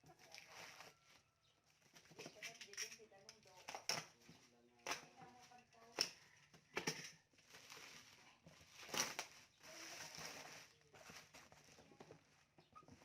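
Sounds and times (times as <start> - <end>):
packaging rustling and crinkling: 0.2 - 1.2, 7.4 - 13.0.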